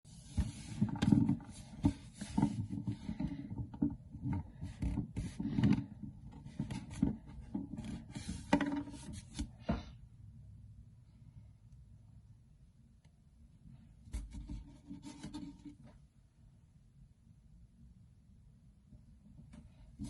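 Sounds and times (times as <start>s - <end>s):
toys rubbing and knocking: 0.1s - 9.6s.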